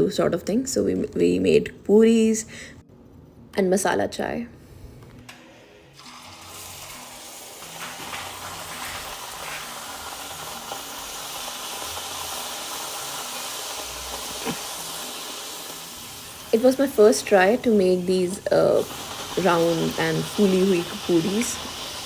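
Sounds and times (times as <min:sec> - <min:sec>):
food sizzling in hot oil: 0:06.0 - 0:22.0
oil crackling: 0:06.0 - 0:22.0.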